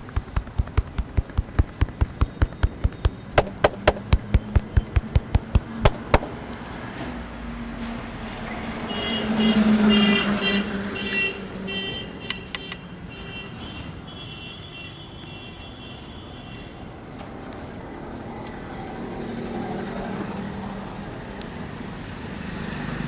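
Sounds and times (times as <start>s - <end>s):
hand slap: 0.0s - 6.6s.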